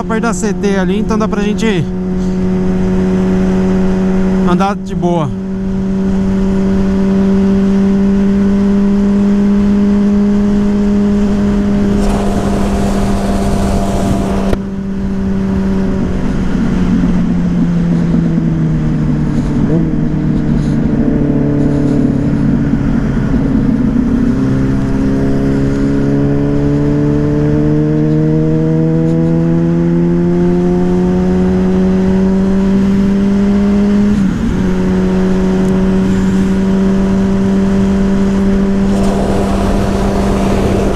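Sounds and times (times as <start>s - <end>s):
motorcycle engine running: 10.5s - 25.1s, 35.4s - 40.9s
rush of noise: 11.3s - 14.7s, 38.8s - 40.9s.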